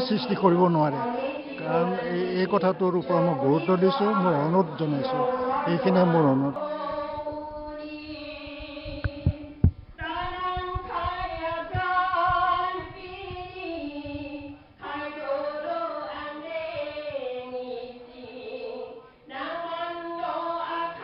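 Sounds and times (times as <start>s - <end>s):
voices singing slow song: 0.0s - 21.0s
sharp knocks: 8.5s - 14.2s.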